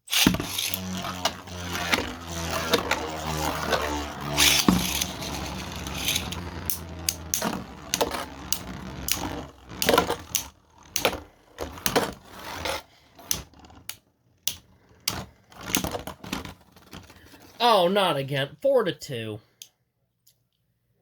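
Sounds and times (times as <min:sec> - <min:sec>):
steady low hum: 0:00.3 - 0:12.7.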